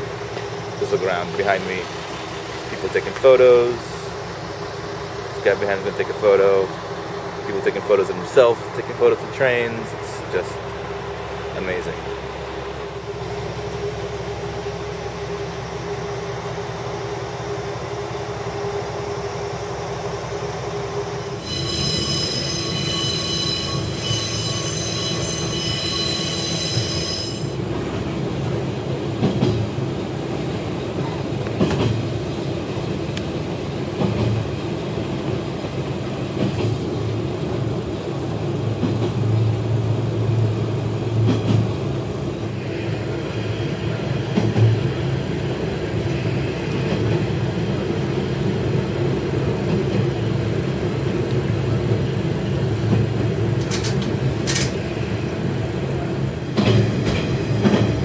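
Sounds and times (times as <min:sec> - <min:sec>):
railcar engine hum: 0:00.0 - 0:58.0
railcar rumble: 0:00.0 - 0:58.0
high-pitched squeal: 0:21.2 - 0:27.6.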